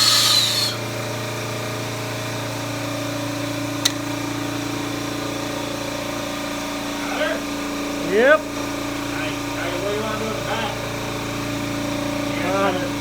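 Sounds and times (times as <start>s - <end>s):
power tool running: 0.0s - 13.0s
steady machine hum: 0.0s - 13.0s
sharp click: 3.8s - 4.0s.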